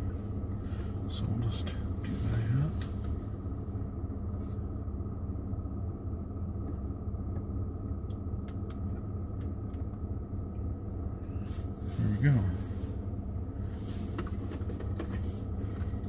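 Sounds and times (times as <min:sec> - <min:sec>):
truck engine idling: 0:00.0 - 0:16.0.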